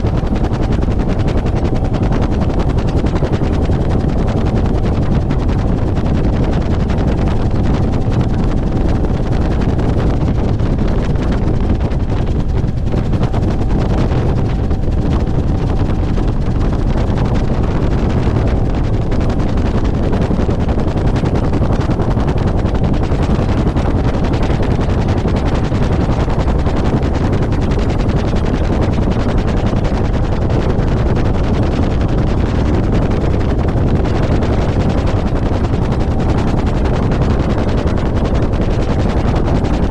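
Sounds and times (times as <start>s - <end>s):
helicopter engine noise: 0.0s - 39.9s
helicopter rotor thumping: 0.0s - 39.9s
wind buffeting microphone: 0.0s - 39.9s.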